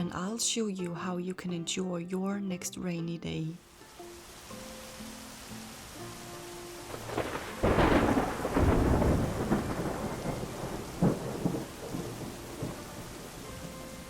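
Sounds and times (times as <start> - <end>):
steady rain: 3.6 - 14.0
thunder cracks and rumble: 6.9 - 13.5.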